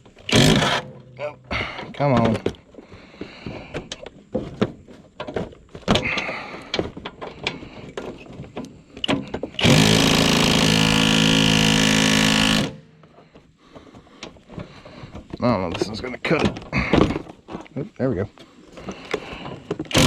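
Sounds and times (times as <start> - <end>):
handheld power tool running: 0.2 - 0.9, 9.6 - 12.9.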